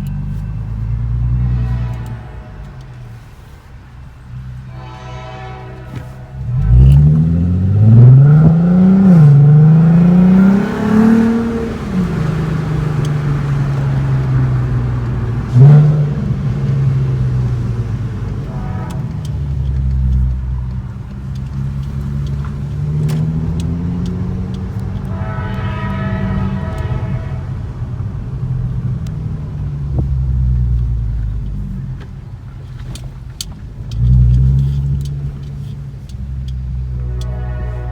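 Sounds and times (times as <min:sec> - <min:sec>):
car engine revving: 0:00.0 - 0:37.9
engine rev blip: 0:05.8 - 0:27.3.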